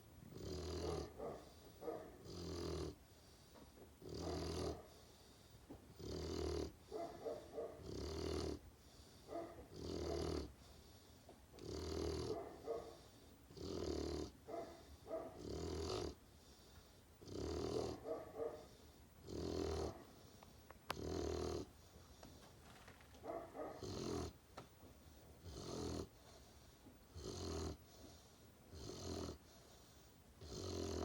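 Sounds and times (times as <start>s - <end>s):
puppy snoring: 0.3s - 1.6s, 2.2s - 3.2s, 4.0s - 11.0s, 11.6s - 20.0s, 20.9s - 21.8s, 23.7s - 24.4s, 25.4s - 26.4s, 27.1s - 31.0s
soft breathing: 3.0s - 4.0s, 4.8s - 5.9s, 10.5s - 11.5s, 16.2s - 17.2s, 21.6s - 23.0s, 26.1s - 27.1s, 29.4s - 30.4s.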